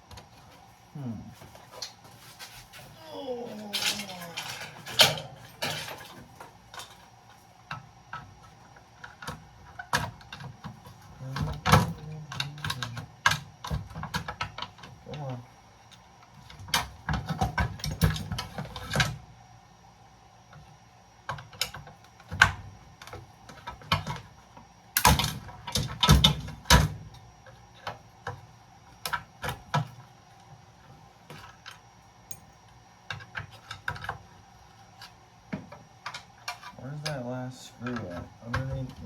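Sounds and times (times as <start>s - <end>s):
metal clicks and clanks of tools: 3.7s - 7.0s.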